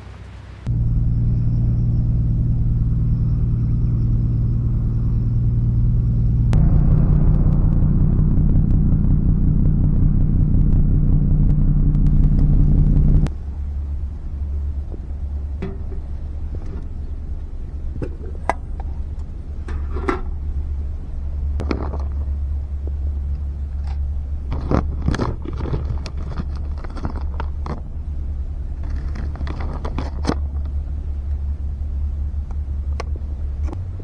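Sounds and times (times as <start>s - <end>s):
clicks and crackling scrapes: 11.5s - 31.6s, 32.4s - 33.9s.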